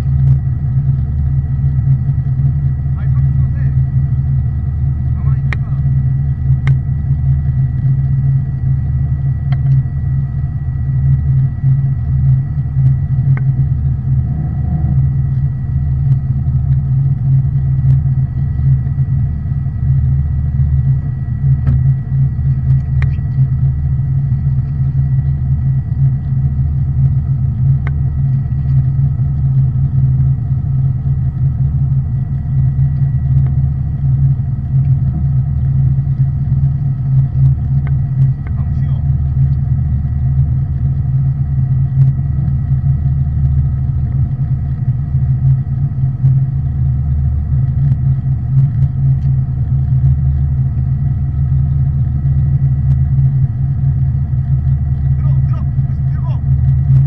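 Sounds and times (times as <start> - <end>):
thin steady whine: 0.0 - 57.0
boat engine rumbling: 8.4 - 40.6, 53.4 - 57.0.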